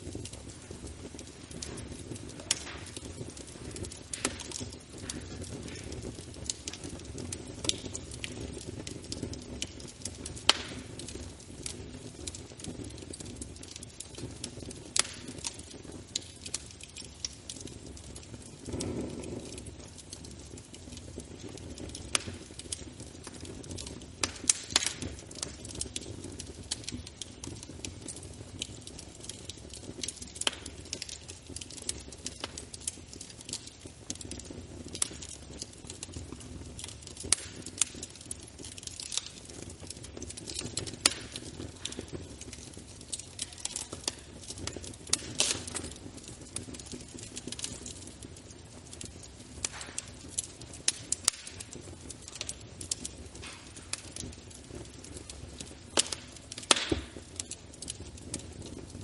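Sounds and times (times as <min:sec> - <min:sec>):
low rumble of flame: 0:00.0 - 0:59.0
wood fire crackling and popping: 0:00.0 - 0:59.0.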